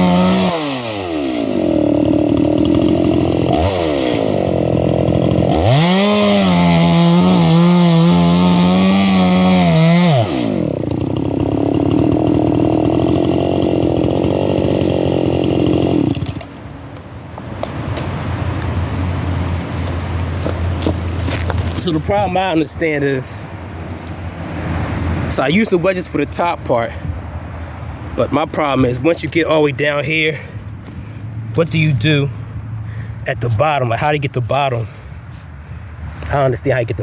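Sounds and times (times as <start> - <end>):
chainsaw cutting a log: 0.0 - 16.6.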